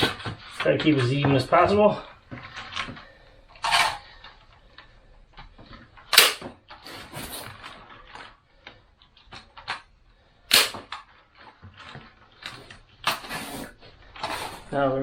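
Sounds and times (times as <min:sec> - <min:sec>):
wire rustling: 0:00.0 - 0:15.0
staple gun firing: 0:06.1 - 0:06.5, 0:10.5 - 0:10.9.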